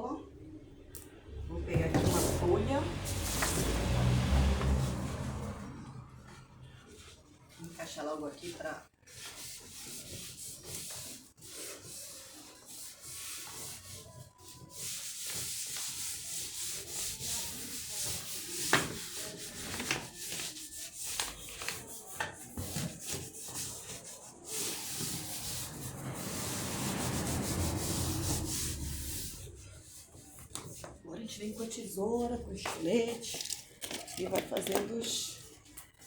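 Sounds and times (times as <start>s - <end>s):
hands rubbing paper: 9.1s - 31.0s
paper rustles: 18.6s - 23.3s.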